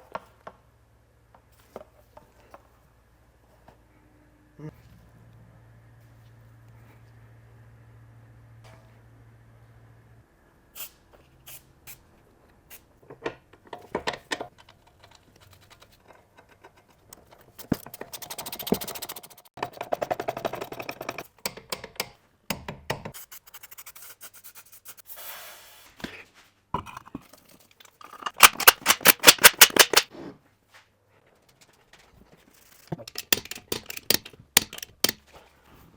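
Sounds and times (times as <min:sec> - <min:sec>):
metal hand tools clicking and knocking: 0:17.2 - 0:23.2, 0:27.9 - 0:30.1, 0:32.9 - 0:35.2
rapid ratchet-like clicks: 0:28.1 - 0:30.1, 0:33.1 - 0:35.2.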